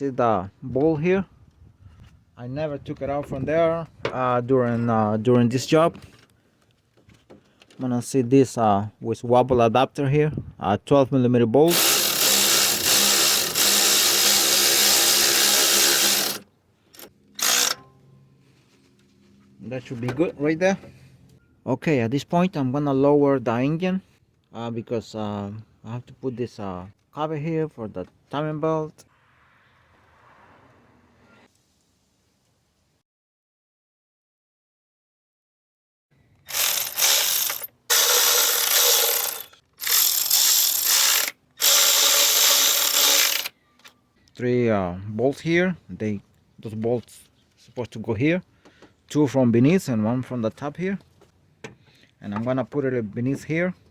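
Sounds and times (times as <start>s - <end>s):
power tool motor whirring: 11.7s - 16.4s, 17.0s - 17.8s, 36.5s - 43.5s
hand ratchet clicking: 11.7s - 17.8s, 36.5s - 43.5s.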